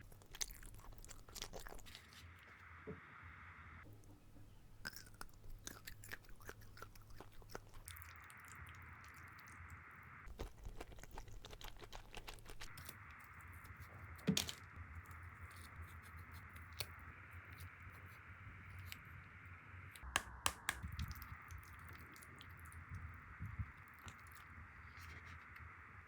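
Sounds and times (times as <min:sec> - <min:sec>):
chewing and biting: 0:00.0 - 0:02.3, 0:04.8 - 0:09.6, 0:10.3 - 0:12.9.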